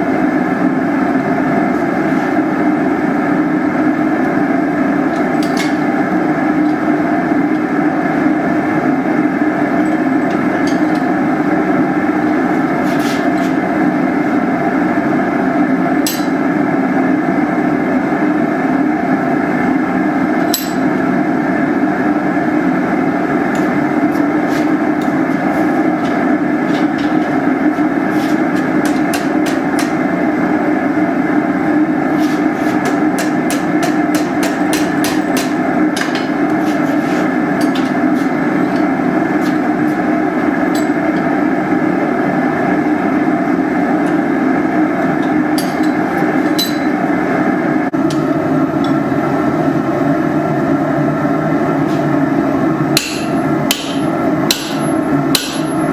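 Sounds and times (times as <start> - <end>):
hammer striking iron on anvil: 5.1 - 6.1, 9.8 - 11.3, 16.0 - 16.5, 20.4 - 21.0, 23.5 - 30.2, 32.6 - 40.0, 40.6 - 41.3, 45.0 - 47.0, 52.9 - 55.9.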